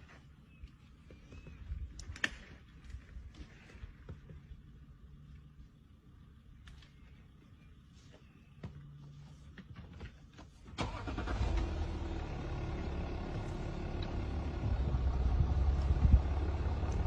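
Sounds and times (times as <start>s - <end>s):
vehicle engine starting and running: 10.8s - 17.0s.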